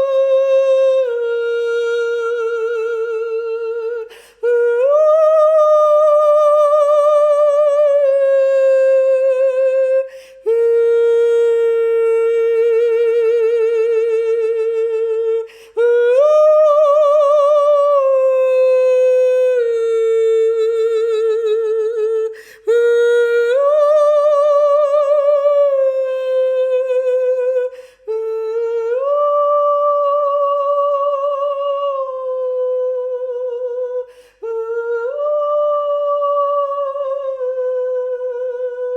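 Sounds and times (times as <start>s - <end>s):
person singing wordless tones: 0.0s - 38.9s
breaths: 4.0s - 4.5s, 10.0s - 10.5s, 15.4s - 15.8s, 22.3s - 22.7s, 27.7s - 28.1s, 34.0s - 34.5s.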